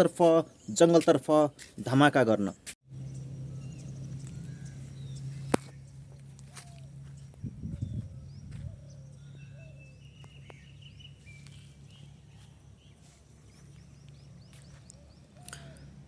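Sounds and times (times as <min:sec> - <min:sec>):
small birds chirping: 0:00.2 - 0:16.0
steady low hum: 0:02.9 - 0:16.0.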